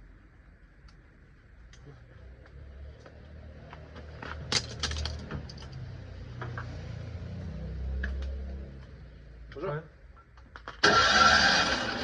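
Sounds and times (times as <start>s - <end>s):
metal tools clinking and rattling: 4.5s - 5.8s.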